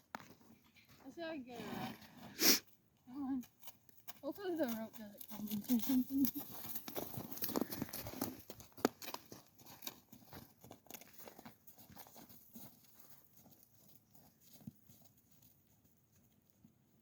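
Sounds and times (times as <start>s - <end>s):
footsteps crunching in snow: 4.5s - 15.4s.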